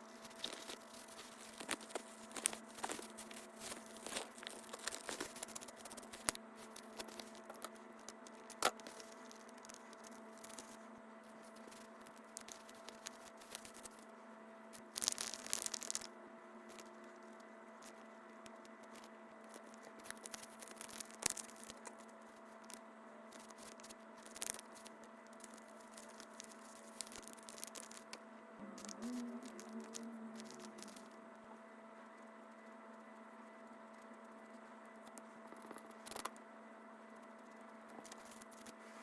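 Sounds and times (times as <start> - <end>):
scratchy tearing noise: 0.0 - 14.0
faint steady hum: 0.0 - 39.0.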